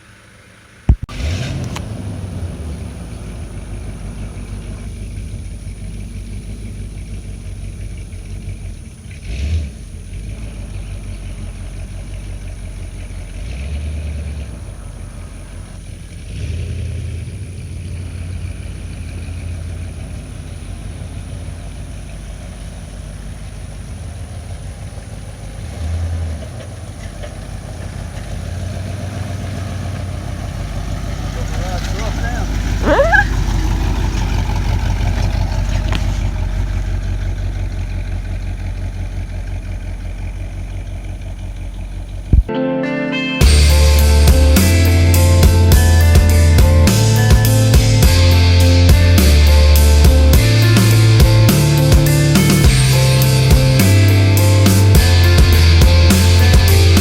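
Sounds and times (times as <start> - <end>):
vehicle engine running: 0.0 - 42.6, 43.4 - 57.0.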